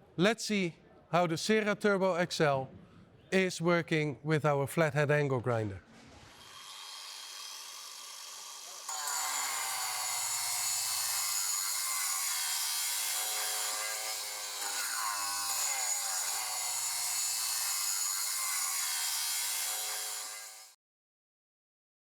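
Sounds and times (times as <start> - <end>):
angle grinder grinding metal: 6.3 - 20.8.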